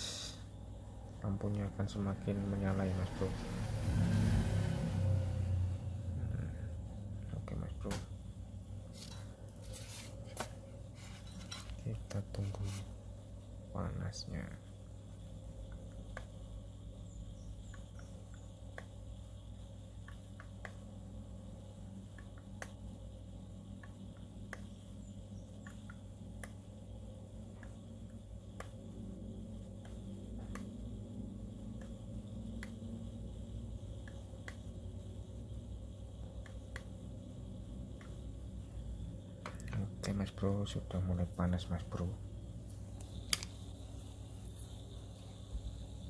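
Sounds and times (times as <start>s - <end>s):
low electrical hum: 0.0s - 46.0s.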